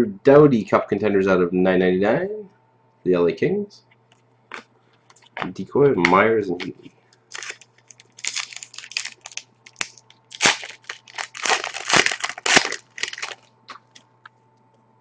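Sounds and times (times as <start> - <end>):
card pack wrapper tearing: 7.3 - 14.1.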